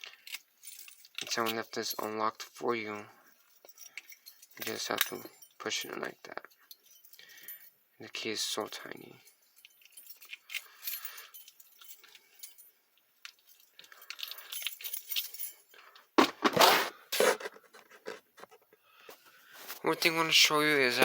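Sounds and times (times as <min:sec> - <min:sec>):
padlock and key clinking: 0:00.0 - 0:02.2, 0:09.5 - 0:18.8.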